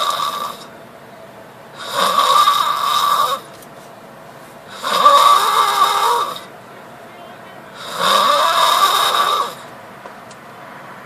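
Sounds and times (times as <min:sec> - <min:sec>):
man snoring loudly: 0:00.0 - 0:00.7, 0:01.8 - 0:03.4, 0:04.7 - 0:06.5, 0:07.7 - 0:09.7.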